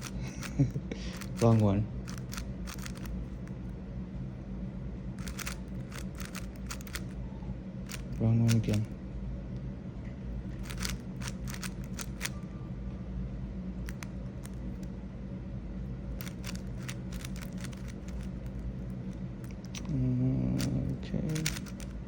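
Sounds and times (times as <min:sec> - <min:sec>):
puzzle cube plastic clicks: 0:00.0 - 0:03.1, 0:05.2 - 0:07.1, 0:07.9 - 0:08.9, 0:10.6 - 0:12.4, 0:16.2 - 0:19.8, 0:20.6 - 0:22.0
steady low hum: 0:00.0 - 0:22.0.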